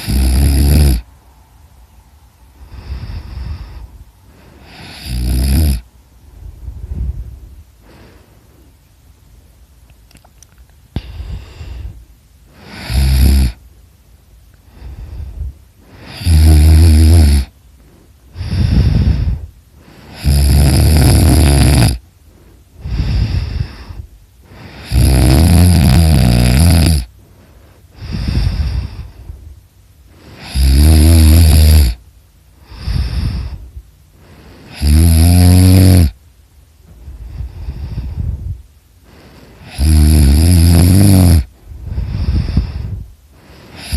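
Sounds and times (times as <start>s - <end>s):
person snoring heavily: 0.0s - 1.1s, 2.6s - 5.9s, 11.0s - 13.6s, 14.7s - 17.6s, 18.3s - 22.0s, 22.8s - 29.5s, 30.1s - 32.0s, 32.6s - 36.2s, 37.0s - 43.9s
quiet breaths: 0.0s - 43.9s.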